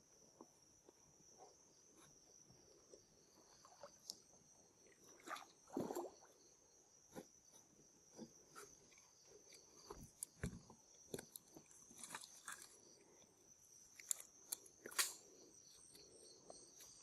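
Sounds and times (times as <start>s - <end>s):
night insects trilling: 1.1s - 17.0s
small clicks and crackles: 13.9s - 15.2s.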